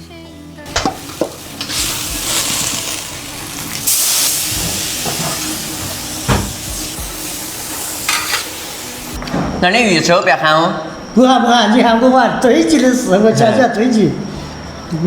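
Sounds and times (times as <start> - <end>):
fish sizzling in a wok: 0.7 - 9.2.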